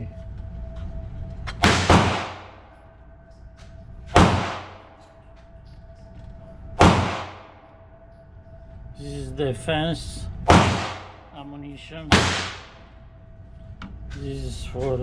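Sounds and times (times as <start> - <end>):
pistol shots with echo: 1.6 - 2.7, 4.2 - 5.0, 6.8 - 7.7, 10.5 - 11.4, 12.1 - 13.0.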